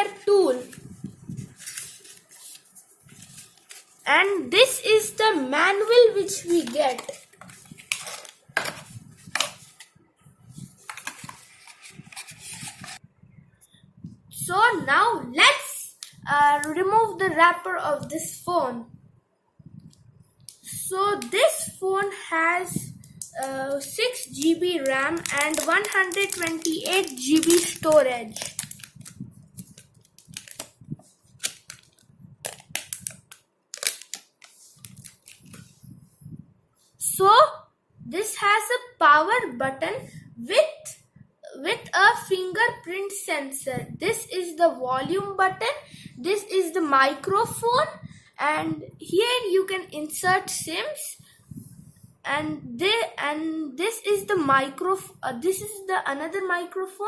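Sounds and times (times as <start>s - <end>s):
packaging rustling: 0.1s - 4.1s, 6.1s - 9.9s, 10.6s - 13.0s, 23.0s - 35.7s
plastic wrapper crackling: 1.4s - 4.1s, 6.2s - 9.8s, 23.0s - 35.7s.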